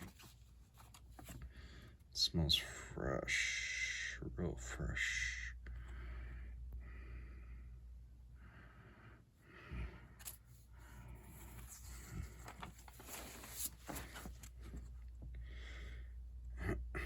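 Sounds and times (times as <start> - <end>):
low steady hum: 0.0 - 17.0
soft breathing: 0.1 - 2.1, 4.8 - 16.5
paper banknotes rustling: 11.2 - 14.7.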